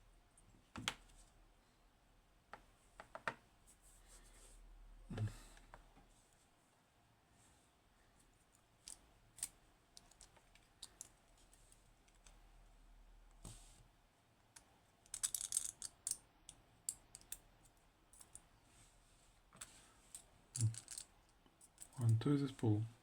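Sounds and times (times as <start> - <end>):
small metal lock parts clicking: 8.8 - 11.1, 15.0 - 17.4, 20.5 - 22.2.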